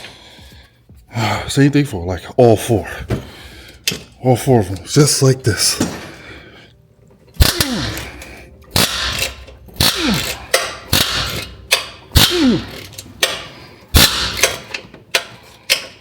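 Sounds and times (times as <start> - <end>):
wrench clacking on bolt: 8.8 - 16.0.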